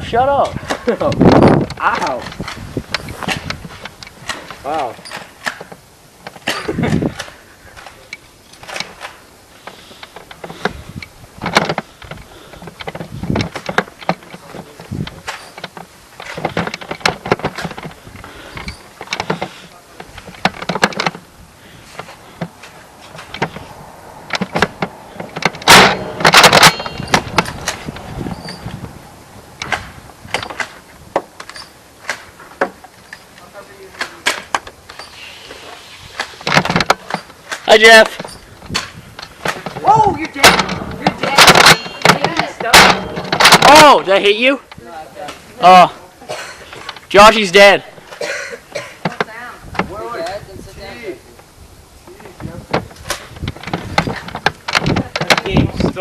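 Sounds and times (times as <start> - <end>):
handling clicks and rustles: 0.2 - 56.0
sharp knocks: 24.3 - 28.6, 36.4 - 44.0.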